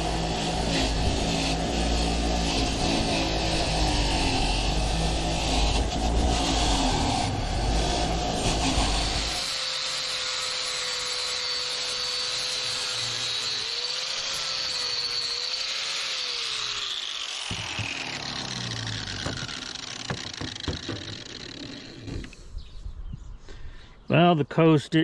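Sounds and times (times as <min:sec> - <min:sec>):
power tool motor whining: 0:00.0 - 0:22.6
sharp knocks: 0:19.2 - 0:22.3.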